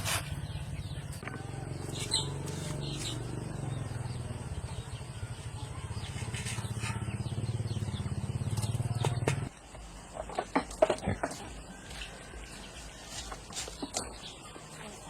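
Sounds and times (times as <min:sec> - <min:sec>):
small engine running: 0:00.7 - 0:09.5.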